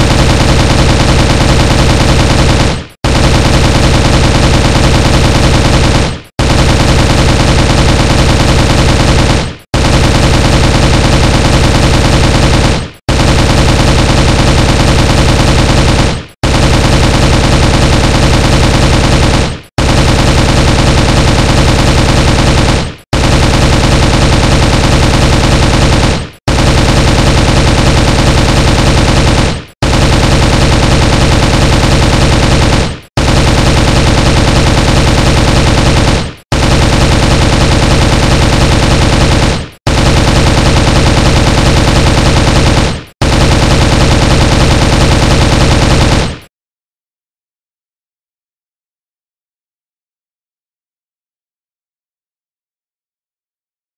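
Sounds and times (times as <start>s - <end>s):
automatic rifle fire: 0.0s - 46.5s.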